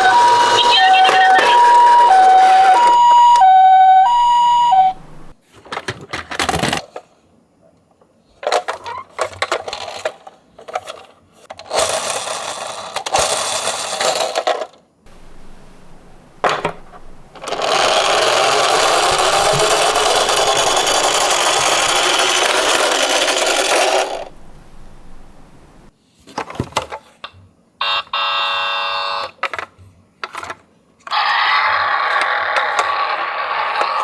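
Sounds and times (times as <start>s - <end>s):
toy cars rolling rattle: 0.0s - 3.2s, 5.5s - 7.2s, 8.3s - 15.6s, 16.2s - 25.6s, 31.2s - 34.0s
toy cars clinking together: 11.6s - 14.8s, 16.4s - 25.3s.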